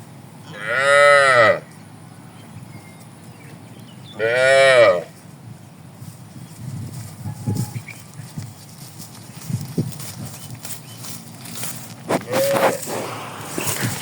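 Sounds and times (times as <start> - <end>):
cattle mooing: 0.5 - 1.6, 4.2 - 5.1.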